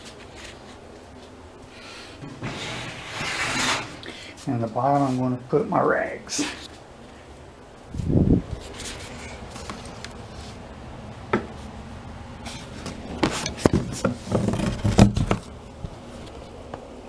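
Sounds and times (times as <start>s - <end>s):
rubbing: 2.3s - 4.1s.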